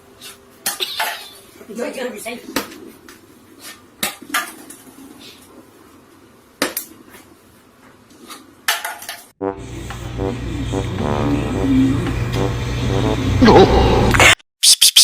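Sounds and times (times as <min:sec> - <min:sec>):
steady low hum: 0:09.4 - 0:14.1.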